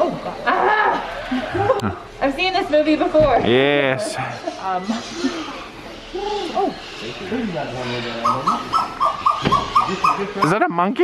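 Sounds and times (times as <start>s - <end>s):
bird hooting calls: 4.3s - 10.6s.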